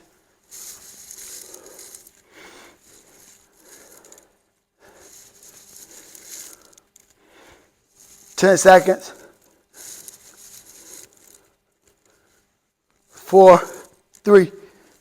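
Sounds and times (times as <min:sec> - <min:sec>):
person breathing with exertion: 0:00.0 - 0:08.4, 0:09.2 - 0:12.6
rustling: 0:00.0 - 0:15.0.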